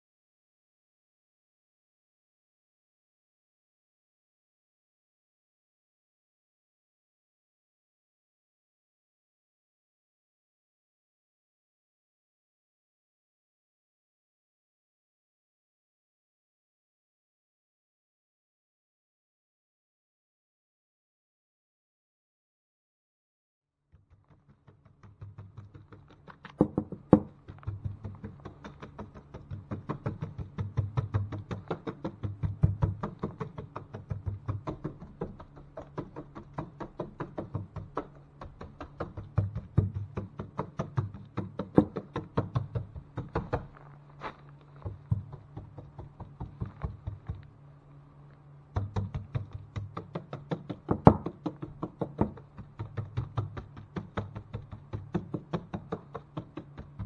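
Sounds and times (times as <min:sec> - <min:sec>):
rapid knocking and tapping: 0:23.9 - 0:44.0, 0:44.7 - 0:47.7, 0:48.6 - 0:57.0
low steady hum: 0:24.2 - 0:57.0.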